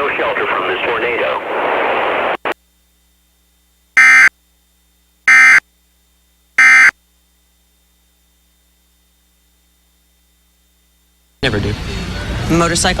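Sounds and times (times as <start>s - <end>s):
short digital data tone bursts: 6.6s - 6.9s.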